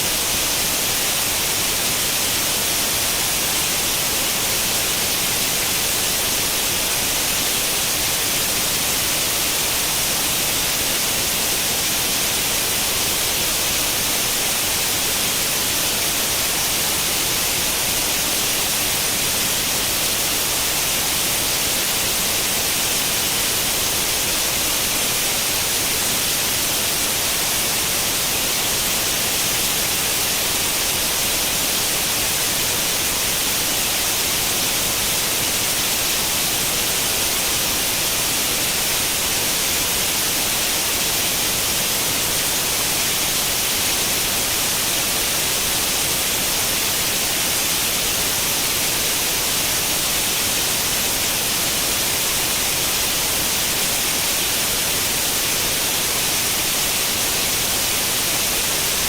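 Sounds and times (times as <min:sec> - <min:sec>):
television static hiss: 0:00.0 - 0:59.0.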